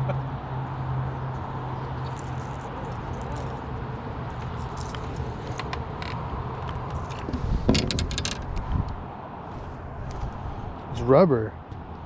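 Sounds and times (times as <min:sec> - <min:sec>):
sharp clicks and knocks: 0:05.4 - 0:09.0.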